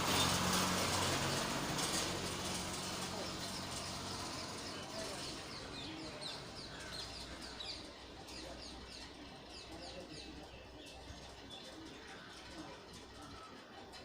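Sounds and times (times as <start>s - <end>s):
small birds chirping: 0.0s - 14.0s.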